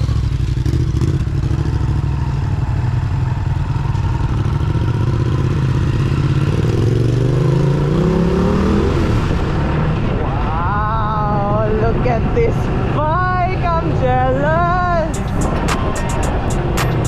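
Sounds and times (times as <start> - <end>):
motorcycle engine accelerating: 0.0 - 9.0.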